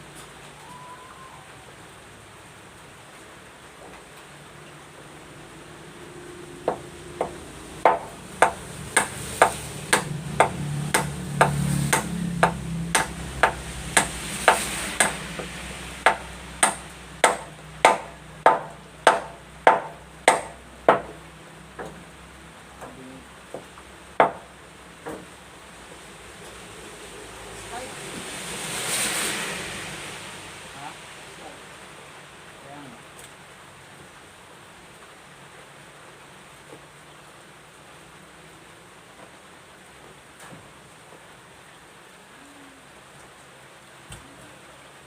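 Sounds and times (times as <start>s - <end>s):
hammer striking nail into wood: 6.7s - 21.2s, 24.2s - 24.4s.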